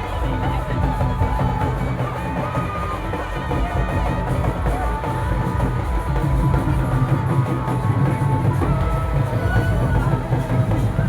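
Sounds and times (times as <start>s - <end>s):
loud music with heavy drum beat: 0.0s - 11.0s.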